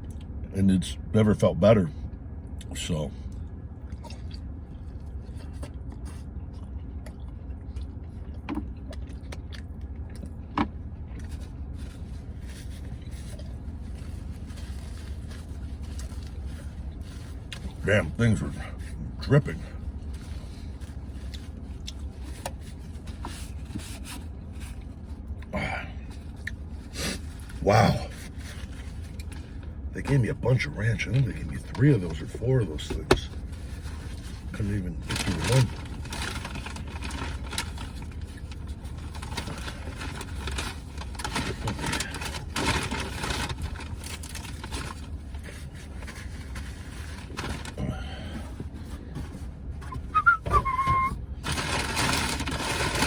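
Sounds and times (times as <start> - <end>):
low steady hum: 0.0 - 53.0
low steady rumble: 0.0 - 53.0
man chewing: 3.3 - 17.8, 20.0 - 24.1
food rustling and scraping: 4.5 - 18.2, 19.6 - 25.4, 26.1 - 30.2, 31.4 - 53.0
breathy sound: 47.8 - 48.5.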